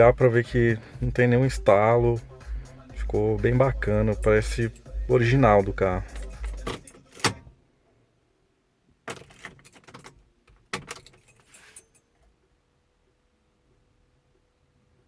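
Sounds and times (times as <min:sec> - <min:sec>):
car keys jangling: 0:03.4 - 0:07.5, 0:09.0 - 0:12.2.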